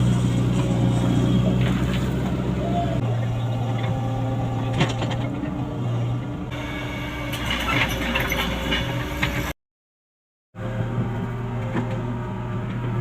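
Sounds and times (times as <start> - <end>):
excavator diesel engine running: 0.0 - 9.5.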